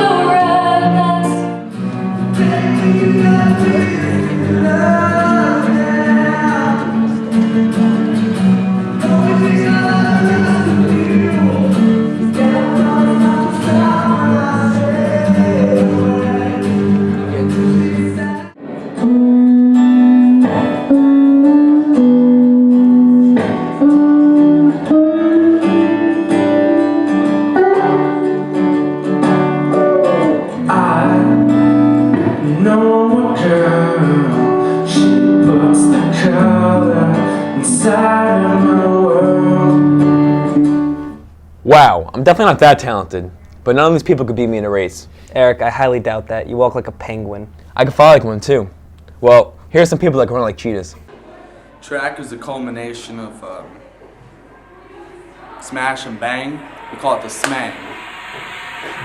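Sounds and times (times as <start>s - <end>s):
guitar: 0.0s - 51.6s
person singing: 2.2s - 7.3s, 8.9s - 28.5s, 29.3s - 40.7s.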